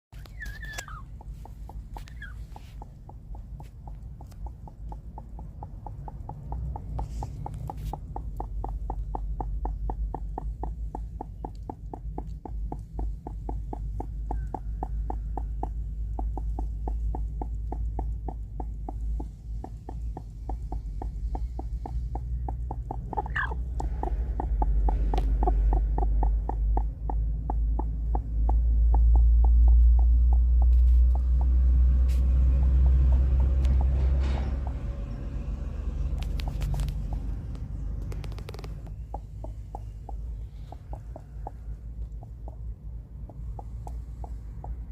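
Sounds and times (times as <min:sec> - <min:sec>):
hen clucking: 0:00.2 - 0:12.2, 0:12.9 - 0:31.7, 0:36.4 - 0:44.9
low rumble: 0:12.3 - 0:44.9.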